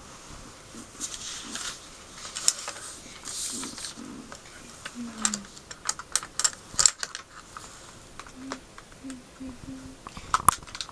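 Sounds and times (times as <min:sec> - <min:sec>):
brief low hums: 0:08.3 - 0:10.1.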